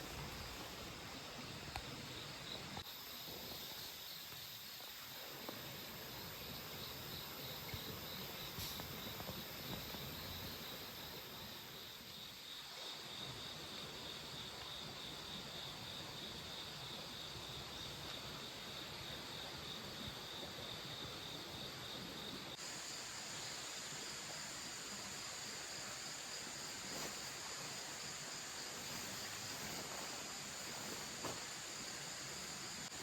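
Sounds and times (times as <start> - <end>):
insects trilling: 0.0 - 33.0.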